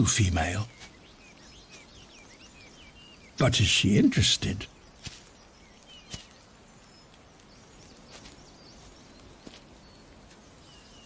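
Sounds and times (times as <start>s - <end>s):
faint bird chirps: 0.0s - 11.0s
soft rustles in leaf litter: 4.7s - 11.0s.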